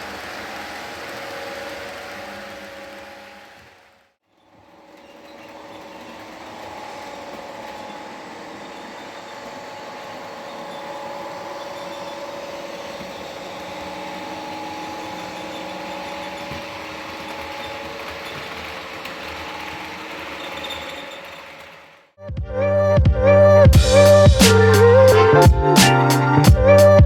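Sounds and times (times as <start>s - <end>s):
diesel engine sound from small speaker: 22.4s - 27.0s.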